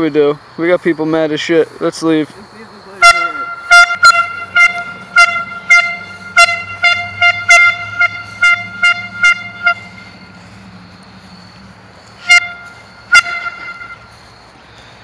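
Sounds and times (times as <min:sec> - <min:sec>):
air horn short toots: 0:03.0 - 0:10.4, 0:12.2 - 0:14.1.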